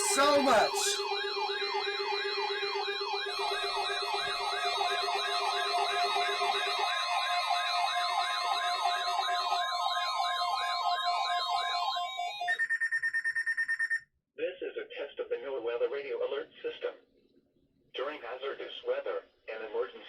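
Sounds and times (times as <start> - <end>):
electronic siren yelping: 0.0 - 14.0.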